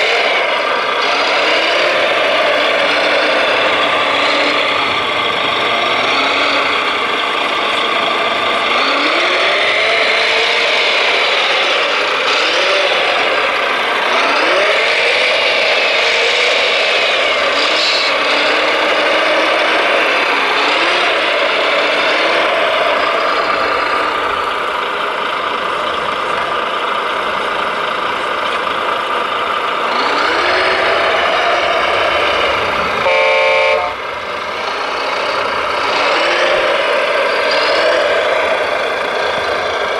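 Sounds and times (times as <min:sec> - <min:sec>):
toy construction machine motors: 0:00.0 - 0:39.9
short horn honk: 0:33.0 - 0:34.0.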